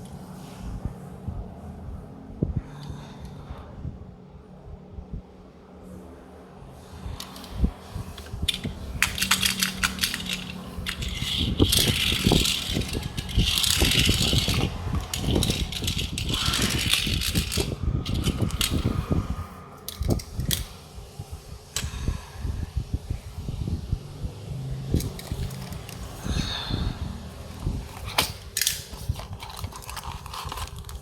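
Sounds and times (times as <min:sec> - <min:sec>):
small clicks and rattles: 0:07.2 - 0:19.0, 0:19.9 - 0:20.7, 0:24.9 - 0:26.2, 0:27.6 - 0:31.0
packaging crinkling and rustling: 0:27.6 - 0:31.0.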